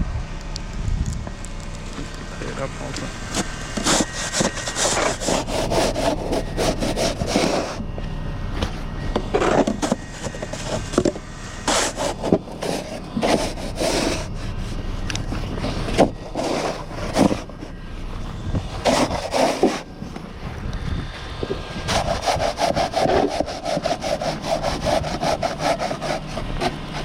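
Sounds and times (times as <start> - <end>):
steady low rumble: 0.0 - 27.0
snow shovel scraping snow: 2.8 - 7.8, 9.2 - 17.9, 18.6 - 20.1, 21.8 - 27.0.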